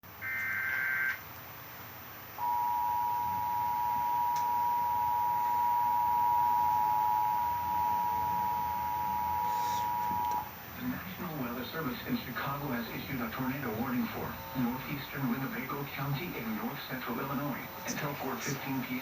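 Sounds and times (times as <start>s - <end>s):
two-tone alert signal: 0.2s - 1.2s, 2.4s - 10.4s.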